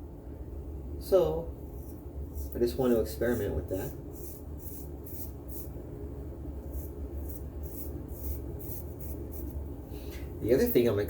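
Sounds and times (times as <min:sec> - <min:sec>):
razor scraping stubble: 0:01.6 - 0:05.8, 0:06.6 - 0:09.7.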